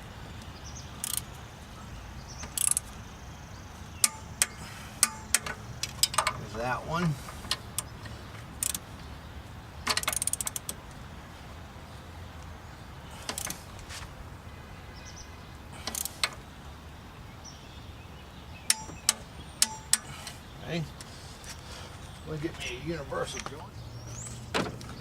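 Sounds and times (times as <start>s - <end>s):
metal clicks: 1.0s - 1.4s, 2.4s - 2.9s, 4.0s - 6.4s, 7.4s - 8.8s, 9.8s - 11.0s, 13.2s - 13.6s, 15.8s - 16.4s, 18.7s - 20.4s
ratchet clicking: 1.0s - 1.4s, 2.4s - 2.9s, 4.0s - 6.4s, 8.6s - 8.8s, 9.9s - 10.8s, 13.2s - 13.6s, 15.8s - 16.4s, 18.7s - 20.1s
sharp metal clinks: 18.7s - 20.1s.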